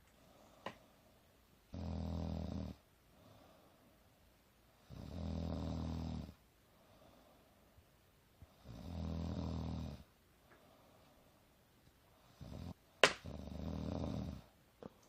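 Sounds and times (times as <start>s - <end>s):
soft breathing: 0.0s - 1.4s, 3.0s - 4.9s, 6.6s - 8.8s, 10.0s - 12.9s
low snoring: 1.7s - 2.8s, 4.8s - 6.4s, 8.5s - 10.1s, 12.3s - 14.5s.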